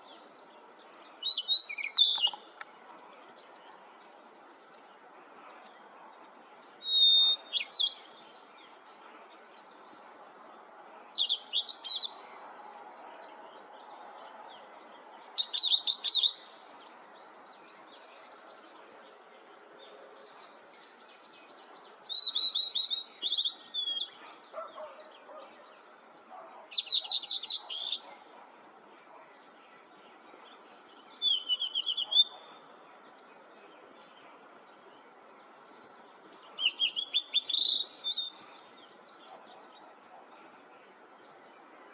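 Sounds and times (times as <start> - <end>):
faint background hiss: 0.0 - 41.9
bird singing whistles and trills: 1.2 - 2.5, 6.8 - 8.4, 11.2 - 12.2, 15.4 - 16.6, 22.1 - 25.5, 26.6 - 28.3, 30.8 - 32.6, 36.4 - 40.1.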